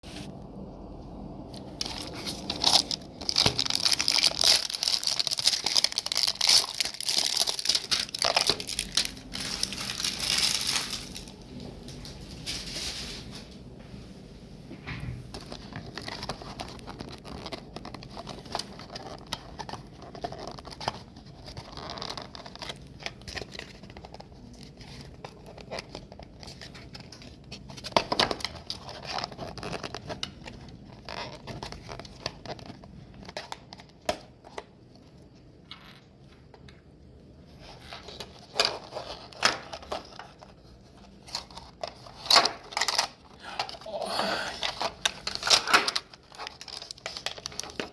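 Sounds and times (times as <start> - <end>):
packaging crinkling and tearing: 1.5 - 13.4, 15.3 - 35.3, 37.5 - 47.9.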